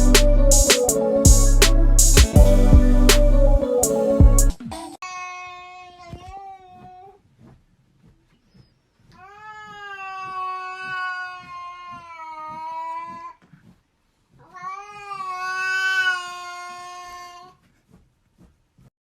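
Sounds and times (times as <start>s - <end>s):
cat yowling: 9.2s - 13.3s, 14.4s - 17.6s.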